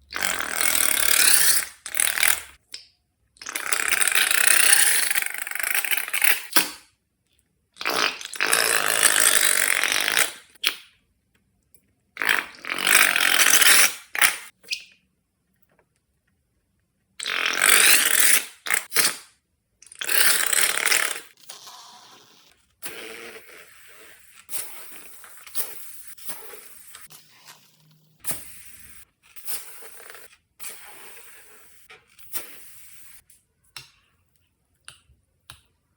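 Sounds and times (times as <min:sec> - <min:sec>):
slime squirting from balloon: 0:07.8 - 0:10.8, 0:22.8 - 0:27.5, 0:28.2 - 0:33.2.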